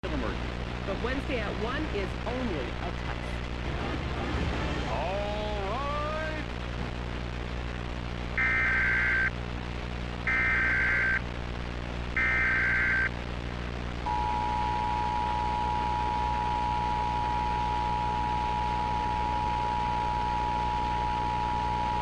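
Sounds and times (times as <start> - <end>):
steady low hum: 0.0 - 22.0
shrill digital data tones: 8.4 - 9.3, 10.3 - 11.2, 12.2 - 13.1.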